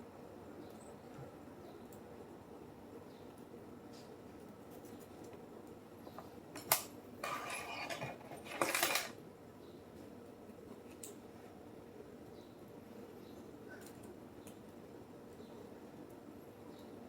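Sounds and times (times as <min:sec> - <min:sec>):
light metallic rattling: 0:06.6 - 0:09.2.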